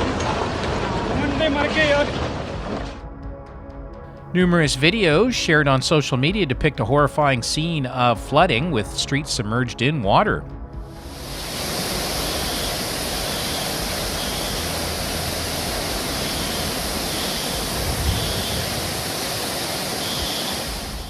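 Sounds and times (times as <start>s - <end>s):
loud rush of water: 0.0s - 3.0s, 10.9s - 21.0s.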